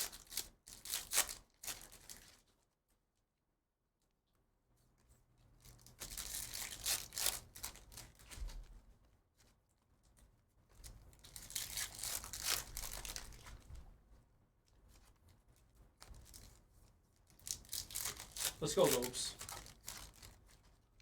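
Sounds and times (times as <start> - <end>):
wrappers torn and crinkled: 0.0 - 2.5, 5.6 - 8.6, 11.1 - 13.7, 16.0 - 16.6, 17.2 - 20.8.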